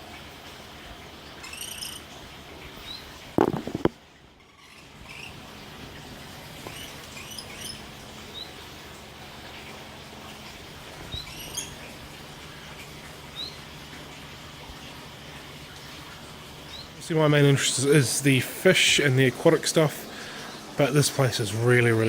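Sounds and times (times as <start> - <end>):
small birds chirping: 1.3 - 3.2, 6.6 - 8.6, 11.0 - 11.9, 13.3 - 13.7, 16.6 - 17.0.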